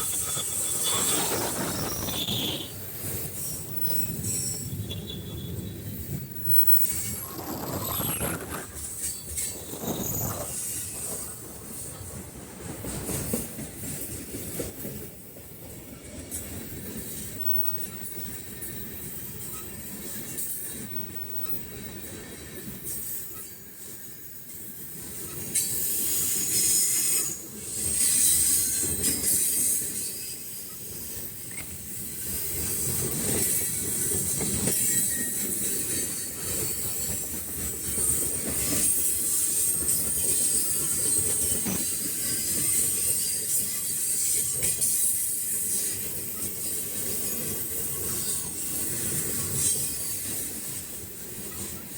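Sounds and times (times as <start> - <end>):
high-pitched wheel squeal: 0.0 - 2.8
freight train rumbling past: 0.0 - 51.9.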